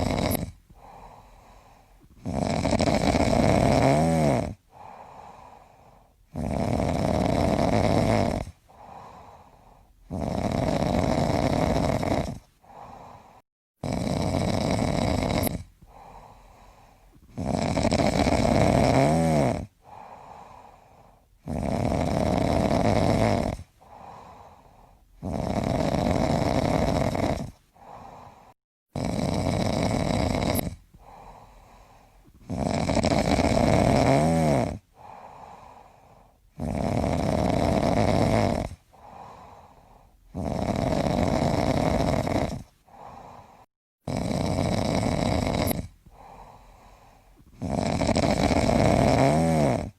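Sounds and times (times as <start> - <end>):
soft breathing: 0.0 - 2.2, 4.6 - 6.3, 8.5 - 10.1, 12.4 - 13.4, 15.7 - 17.4, 19.7 - 21.4, 23.6 - 25.2, 27.5 - 28.6, 30.8 - 32.5, 34.8 - 36.6, 38.6 - 40.4, 42.5 - 43.7, 45.8 - 47.6
person snoring: 0.0 - 49.9.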